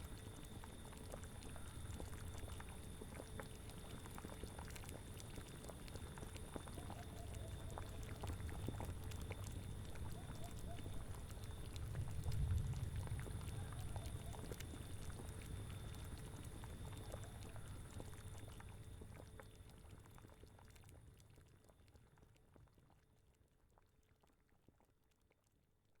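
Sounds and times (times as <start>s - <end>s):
bubbling cauldron: 0.0s - 25.4s
low wind rumble: 11.8s - 14.4s.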